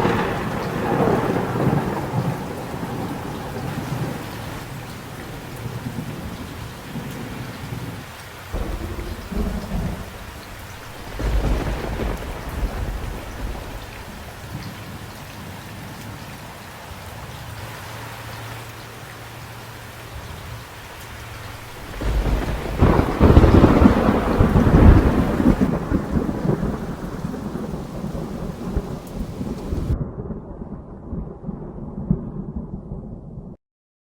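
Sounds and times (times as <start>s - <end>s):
rumbling thunderclap: 0.0s - 7.9s, 8.6s - 14.8s, 21.3s - 33.6s
steady rain: 0.0s - 30.0s.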